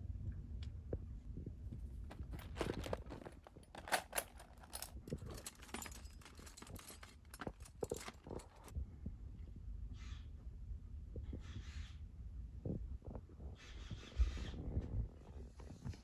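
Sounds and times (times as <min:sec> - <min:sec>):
footsteps: 0:01.7 - 0:08.7
tools clicking and rustling: 0:02.0 - 0:08.7.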